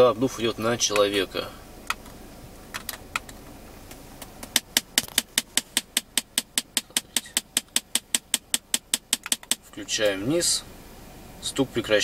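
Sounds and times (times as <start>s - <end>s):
rapid knocking from air vents: 4.2s - 9.6s.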